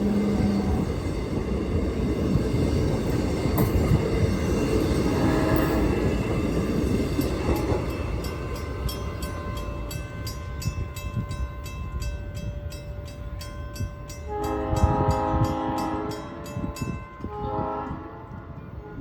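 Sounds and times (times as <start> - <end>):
train air horn: 0.0 - 0.9, 5.1 - 6.0, 14.3 - 19.0
electric train rumbling past: 0.0 - 19.0.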